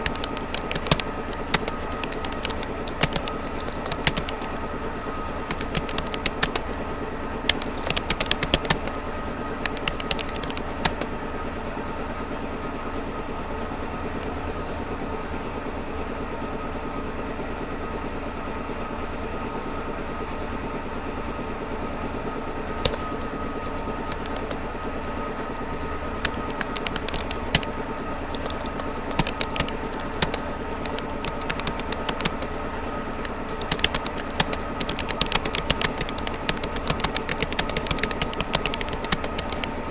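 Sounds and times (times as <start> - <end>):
computer keyboard clicking: 0.0 - 11.2, 22.8 - 24.7, 26.1 - 39.9
background hum: 0.0 - 12.0, 22.0 - 39.9.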